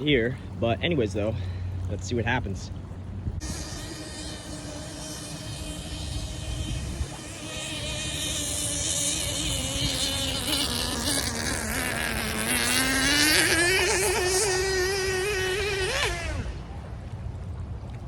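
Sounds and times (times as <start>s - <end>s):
small engine whining: 0.0s - 17.0s.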